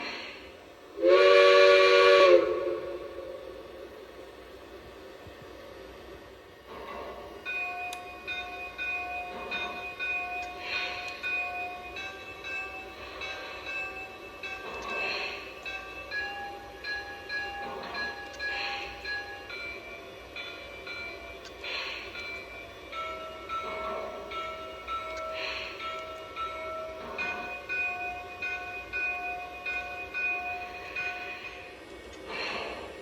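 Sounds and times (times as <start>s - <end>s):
steam hiss: 0.0s - 33.0s.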